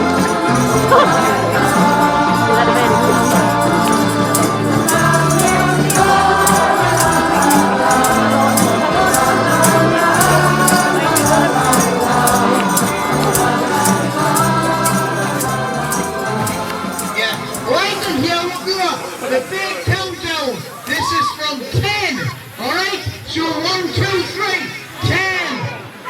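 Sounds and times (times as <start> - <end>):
ticking beat: 0.0 - 18.2
christmas music with singing: 0.0 - 25.8.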